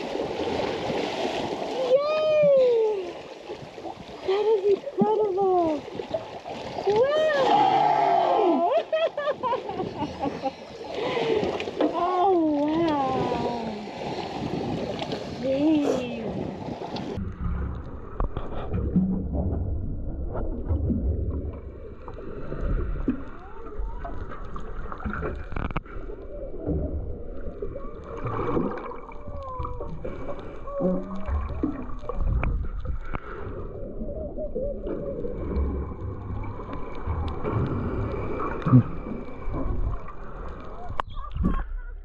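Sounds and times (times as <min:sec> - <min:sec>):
low rumble of water noise: 0:00.0 - 0:42.0
humpback whale song: 0:26.1 - 0:32.6.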